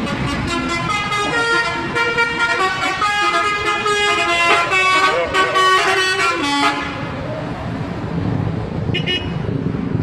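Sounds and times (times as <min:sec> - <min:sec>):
bus air horn playing a tune: 0:00.0 - 0:07.0, 0:08.9 - 0:09.4
low rumble of bus: 0:00.0 - 0:10.0.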